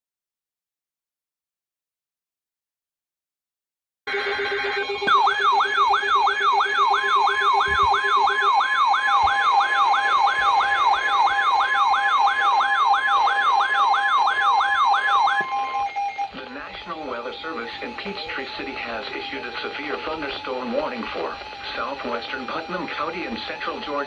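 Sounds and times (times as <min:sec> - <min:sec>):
electronic emergency alert tone: 0:04.1 - 0:16.4.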